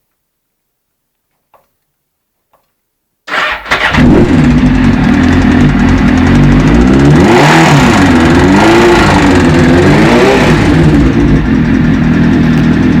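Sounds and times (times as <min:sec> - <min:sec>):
motorcycle engine idling and revving: 0:03.3 - 0:13.0
engine knocking: 0:04.4 - 0:10.2, 0:10.8 - 0:13.0.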